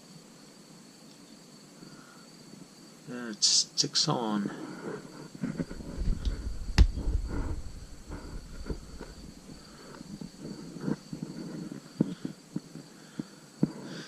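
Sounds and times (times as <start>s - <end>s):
faint high whine: 5.2s - 14.0s
small taps and rustles: 5.4s - 13.8s.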